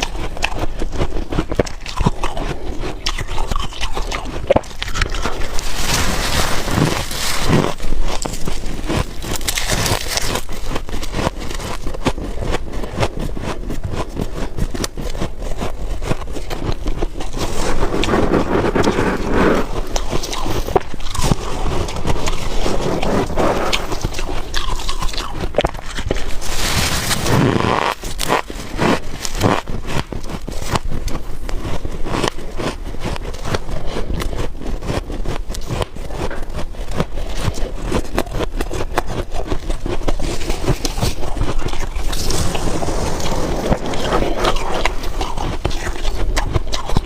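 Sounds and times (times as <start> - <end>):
crunching frost between teeth: 0.0 - 47.0.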